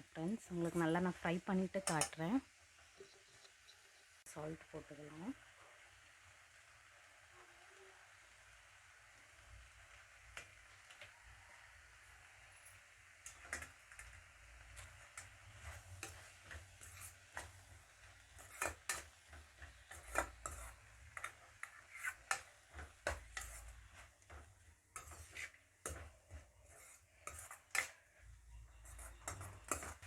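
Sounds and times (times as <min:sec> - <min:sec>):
spoon scraping a pan: 0:01.8 - 0:02.2, 0:11.8 - 0:30.0.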